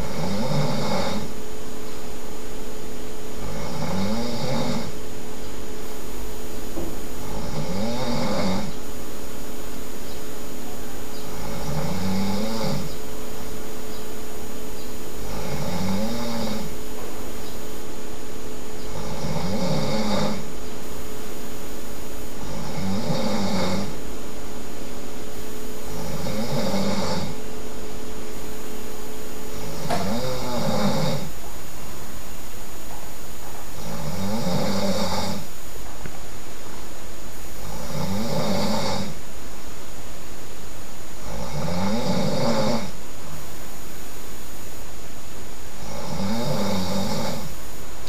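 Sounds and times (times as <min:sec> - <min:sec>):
person snoring loudly: 0:00.0 - 0:01.3, 0:03.4 - 0:05.0, 0:07.2 - 0:08.8, 0:11.3 - 0:12.9, 0:15.2 - 0:16.8, 0:18.9 - 0:20.5, 0:22.4 - 0:24.0, 0:25.8 - 0:27.4, 0:29.5 - 0:31.4, 0:33.8 - 0:35.5, 0:37.6 - 0:39.2, 0:41.2 - 0:43.0, 0:45.8 - 0:47.6.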